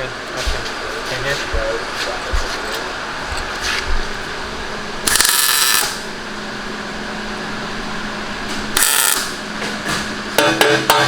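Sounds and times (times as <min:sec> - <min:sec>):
steady shop hum: 0:00.0 - 0:11.0
welding crackle: 0:05.1 - 0:06.1, 0:08.8 - 0:09.4.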